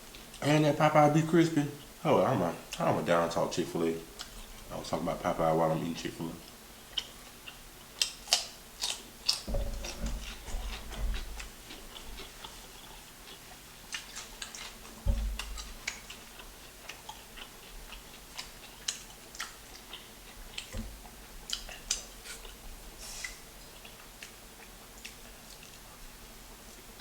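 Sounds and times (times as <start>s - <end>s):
wet chewing mouth sounds: 6.4s - 26.1s
dull thumps: 9.5s - 12.0s, 15.0s - 15.8s.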